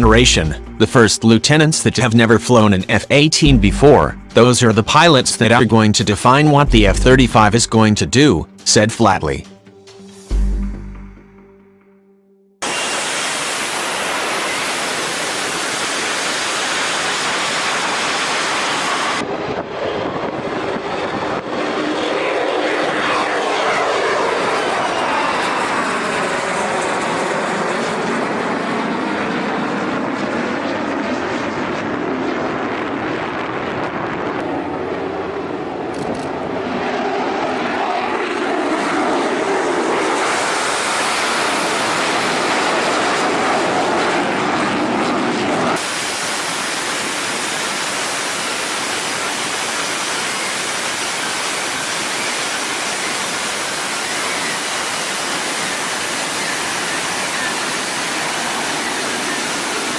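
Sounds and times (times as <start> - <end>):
jet engine passing overhead: 12.6 - 59.9
steady rushing hiss: 45.8 - 59.8.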